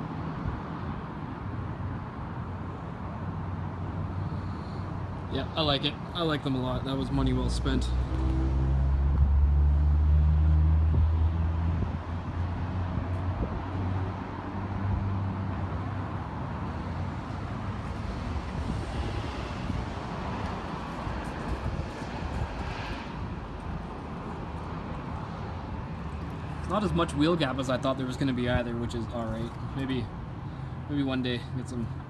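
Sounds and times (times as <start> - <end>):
road and wind noise: 0.0 - 32.0.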